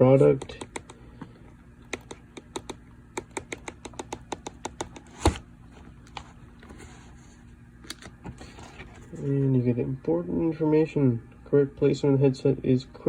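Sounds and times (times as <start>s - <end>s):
sharp handling clicks: 0.3s - 1.0s.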